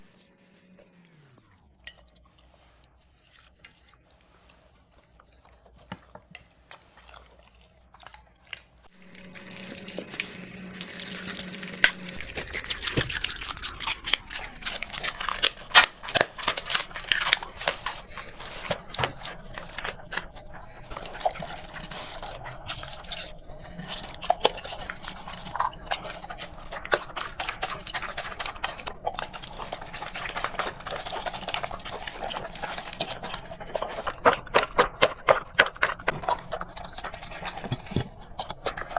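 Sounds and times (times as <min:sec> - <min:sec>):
dog crunching dry food: 0:08.2 - 0:38.9.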